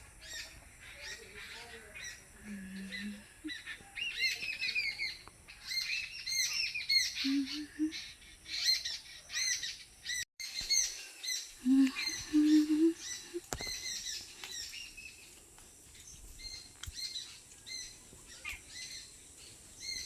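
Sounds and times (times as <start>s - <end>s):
small birds chirping: 0.0s - 20.0s
low bird notes: 11.6s - 13.4s.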